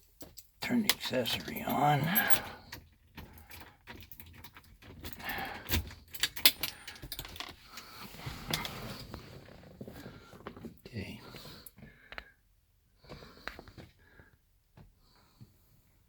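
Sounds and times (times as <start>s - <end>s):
car keys jangling: 0.2s - 7.4s
key turning in ignition: 0.7s - 7.9s.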